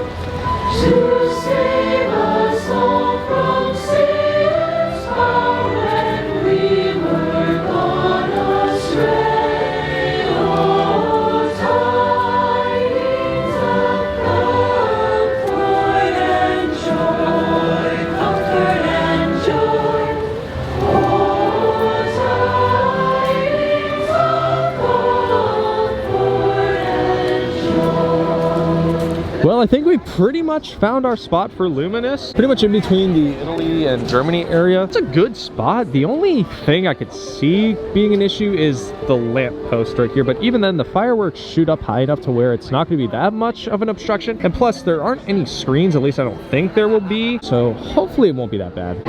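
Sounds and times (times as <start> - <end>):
choir singing in harmony: 0.0 - 29.6
instrumental accompaniment: 0.0 - 29.6.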